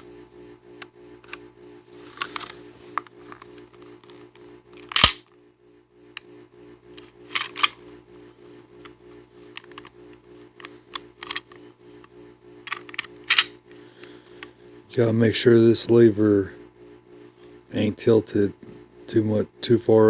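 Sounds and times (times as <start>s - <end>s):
metallic clicks of pistol parts: 4.8s - 5.3s.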